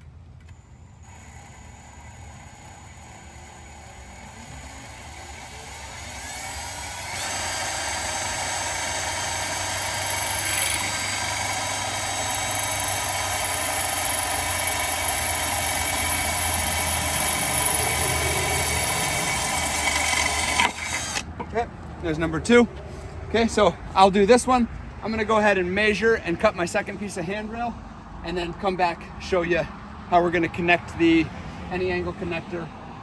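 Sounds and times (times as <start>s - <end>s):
electric drill boring into metal: 0.8s - 21.3s.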